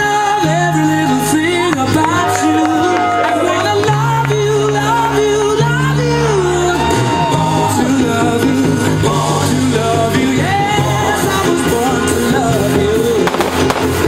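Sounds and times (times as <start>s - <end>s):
held bass notes: 0.0s - 14.0s
person singing: 0.0s - 14.0s.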